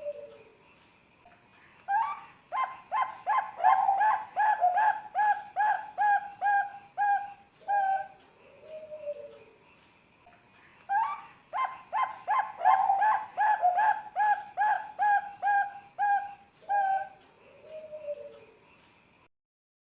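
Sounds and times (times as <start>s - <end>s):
dove cooing: 0.0s - 0.5s, 1.9s - 9.5s, 10.9s - 18.5s.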